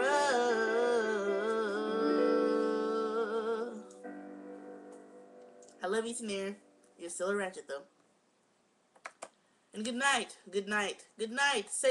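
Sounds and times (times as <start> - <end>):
person singing wavering note: 0.0 - 5.2.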